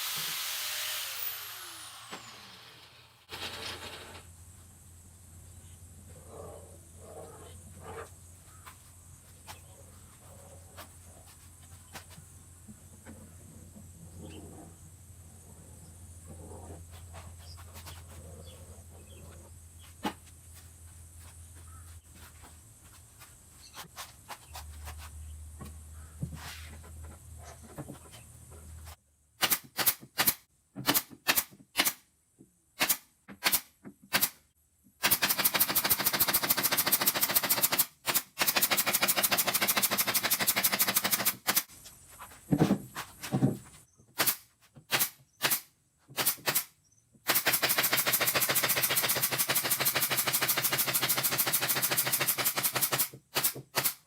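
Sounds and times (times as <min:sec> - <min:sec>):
power tool driving fasteners: 0:00.0 - 0:04.3, 0:35.0 - 0:41.7, 0:44.2 - 0:54.0.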